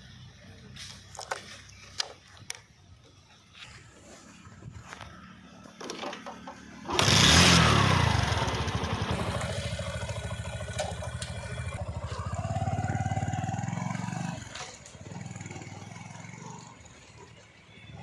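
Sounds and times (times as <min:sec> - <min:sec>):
diesel engine running: 0:05.2 - 0:18.0.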